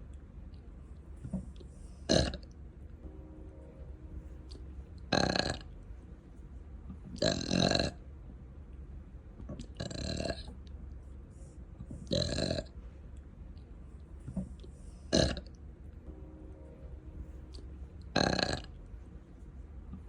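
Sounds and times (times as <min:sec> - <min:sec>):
person burping: 0:02.1 - 0:02.4, 0:15.2 - 0:15.4, 0:18.2 - 0:18.7.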